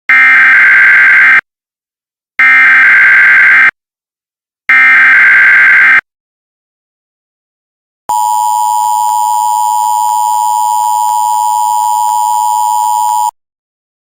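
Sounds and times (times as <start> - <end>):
two-tone electronic alert beep: 8.1 - 13.3.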